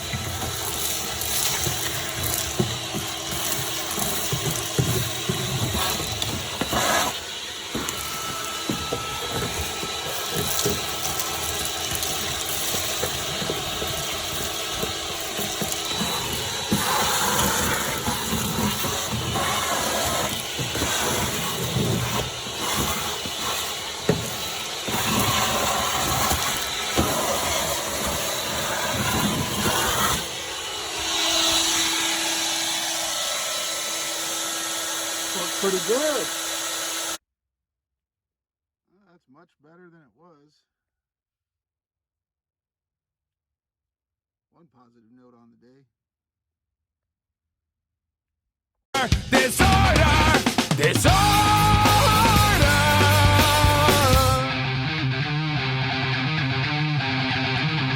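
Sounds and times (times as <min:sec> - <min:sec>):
vacuum cleaner running: 0:00.0 - 0:37.2, 0:49.6 - 0:57.9.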